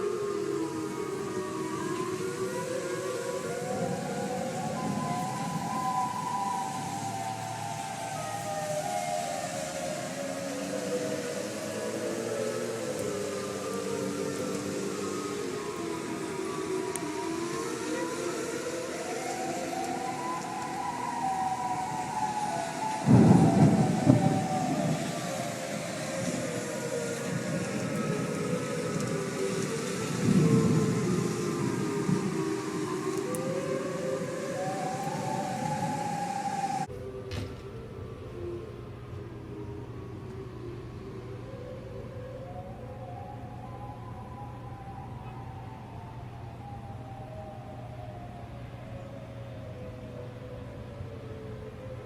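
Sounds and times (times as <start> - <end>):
tornado warning sirens wailing: 0.0 - 52.0.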